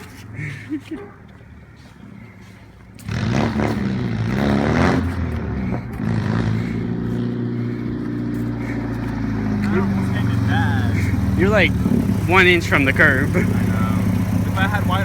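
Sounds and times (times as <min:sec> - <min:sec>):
car engine revving: 0:03.0 - 0:15.0.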